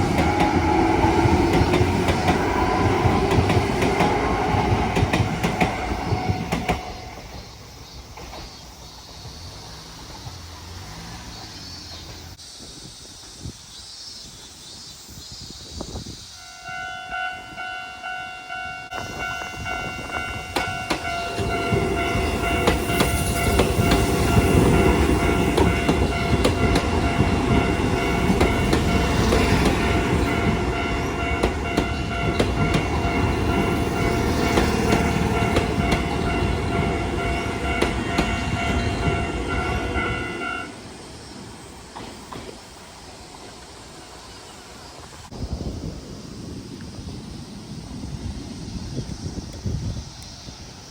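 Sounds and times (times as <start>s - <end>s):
level-crossing alarm ringing: 0.0s - 7.3s, 16.4s - 40.8s
train wheels clicking on rail joints: 0.0s - 12.4s, 18.9s - 45.3s.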